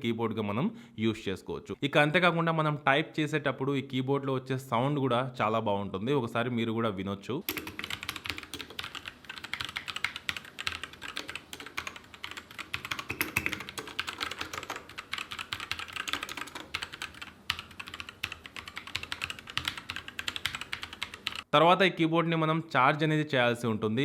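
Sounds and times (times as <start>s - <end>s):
mechanical keyboard typing: 7.4s - 21.5s.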